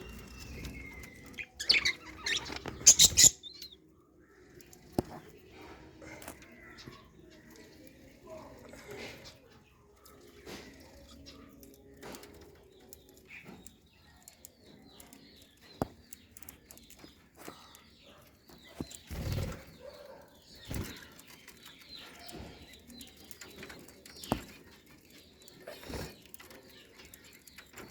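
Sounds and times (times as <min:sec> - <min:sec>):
budgerigars chirping: 0:00.1 - 0:03.8.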